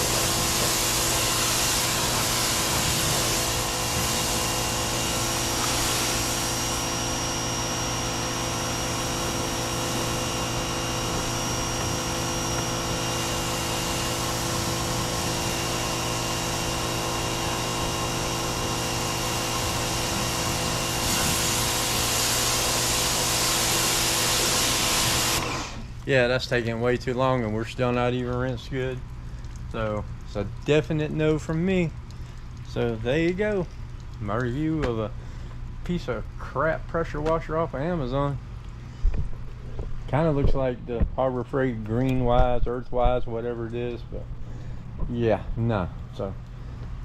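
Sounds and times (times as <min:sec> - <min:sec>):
water spray hissing: 0:00.0 - 0:26.0
pressure washer pump running: 0:00.0 - 0:47.0.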